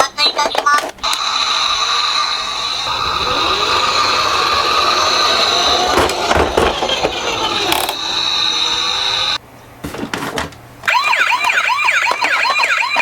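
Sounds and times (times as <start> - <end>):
toy car wheels rumbling: 0.5 - 9.4, 11.3 - 13.0
steady high-pitched tone: 1.1 - 9.4
clattering knocks: 3.4 - 10.6.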